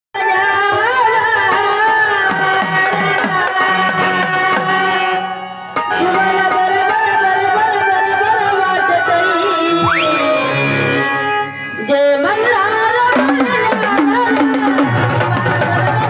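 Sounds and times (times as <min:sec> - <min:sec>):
sustained melodic notes: 0:01.5 - 0:13.0.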